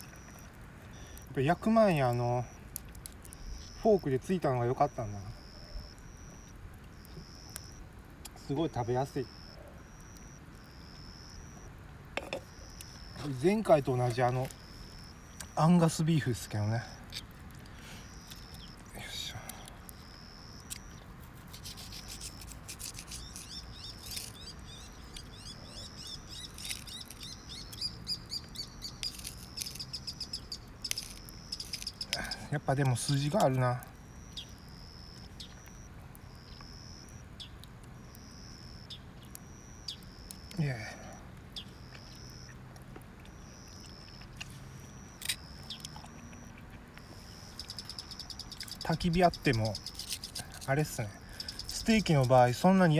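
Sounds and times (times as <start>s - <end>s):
insect calling high-pitched: 0.0s - 2.7s, 3.3s - 42.6s, 43.2s - 52.9s
quick high chirps: 47.3s - 52.5s.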